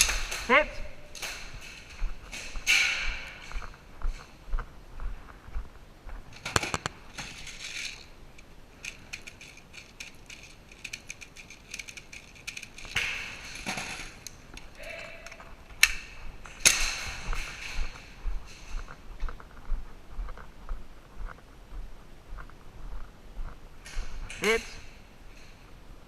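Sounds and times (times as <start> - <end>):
loud cracks: 0.0 - 3.6, 12.4 - 18.0
airsoft guns clicking and rattling: 0.0 - 4.2, 6.3 - 19.6.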